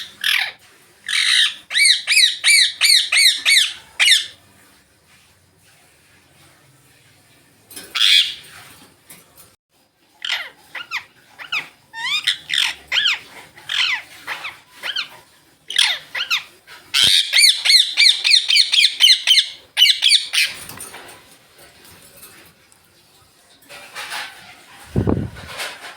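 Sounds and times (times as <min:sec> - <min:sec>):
parakeets squawking and screeching: 0:00.0 - 0:04.4, 0:07.9 - 0:08.7, 0:10.2 - 0:21.0
fast parakeet chatter: 0:10.2 - 0:20.6.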